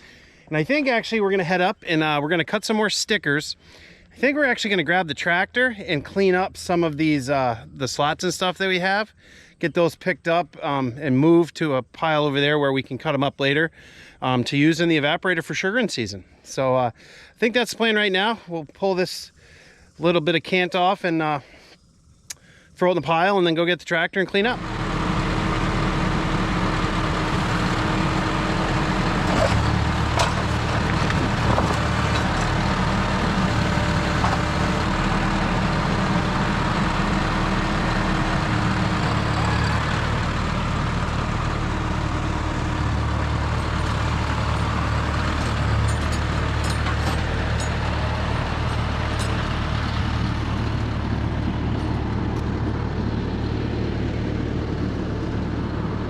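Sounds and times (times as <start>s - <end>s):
tractor diesel engine running: 0.0s - 3.2s, 24.3s - 56.0s
light clanks and rattles: 27.7s - 34.6s, 43.6s - 49.9s.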